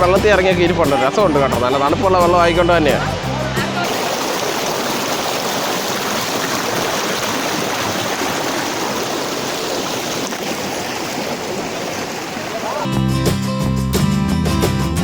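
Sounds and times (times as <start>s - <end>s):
river water flowing over stones: 3.1s - 12.9s.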